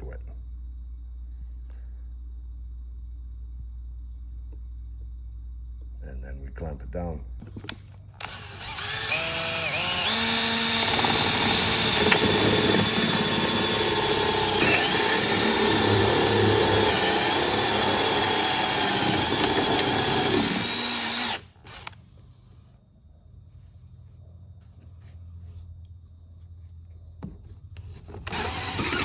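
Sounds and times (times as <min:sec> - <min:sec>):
drill bit cutting wood: 0:08.2 - 0:22.0, 0:28.2 - 0:29.0
electric drill motor whine: 0:08.2 - 0:22.0, 0:28.2 - 0:29.0.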